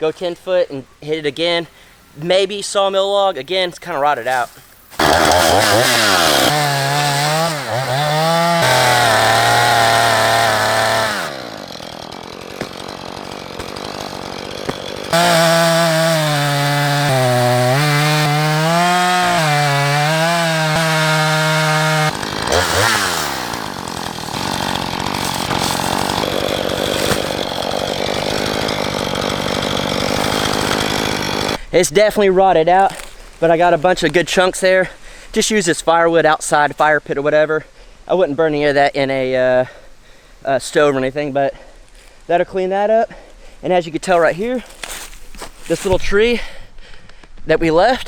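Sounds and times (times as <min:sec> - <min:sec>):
chainsaw cutting wood: 0:04.1 - 0:31.7, 0:32.8 - 0:34.3, 0:44.0 - 0:46.4.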